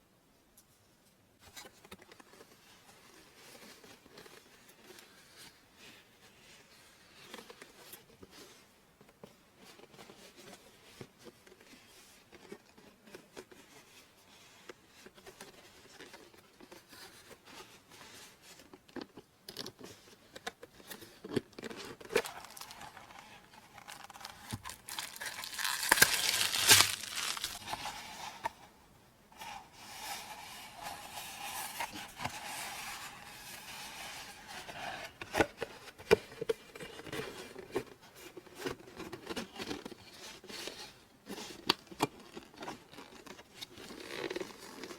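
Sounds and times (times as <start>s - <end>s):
hands handling parcel: 20.7s - 28.6s
packaging tearing and crinkling: 22.0s - 28.0s.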